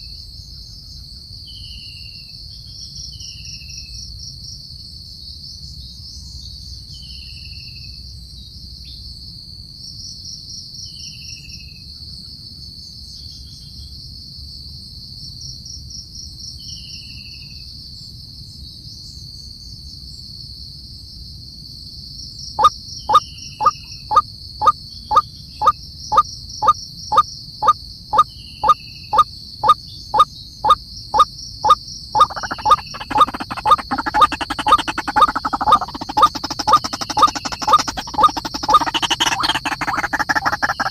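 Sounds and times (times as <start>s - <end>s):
high-pitched insect drone: 31.2s - 40.9s
dense busy sound: 32.2s - 40.9s
sharp evenly spaced notes: 32.2s - 40.9s.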